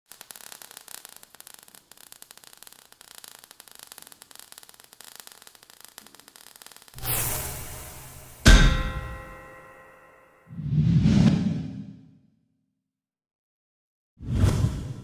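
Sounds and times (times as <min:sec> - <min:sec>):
crackling static: 0:00.0 - 0:07.4.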